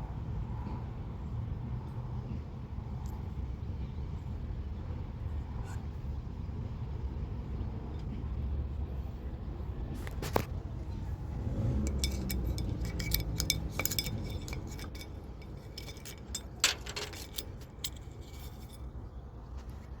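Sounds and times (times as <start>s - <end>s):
metal parts and tools clinking: 11.2s - 19.1s.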